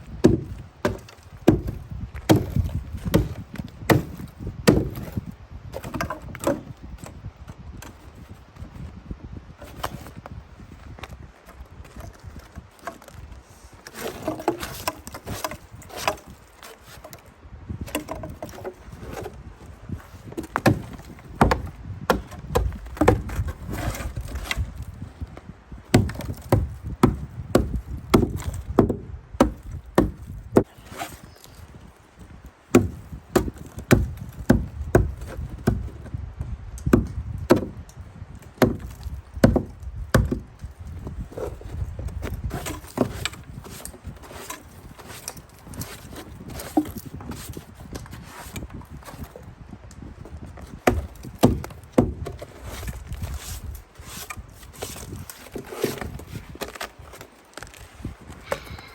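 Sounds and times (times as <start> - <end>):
hand tool chipping ice: 0.2 - 5.2, 13.9 - 17.2, 20.2 - 24.9, 25.9 - 31.4, 32.7 - 35.8, 42.5 - 49.3, 50.8 - 56.9.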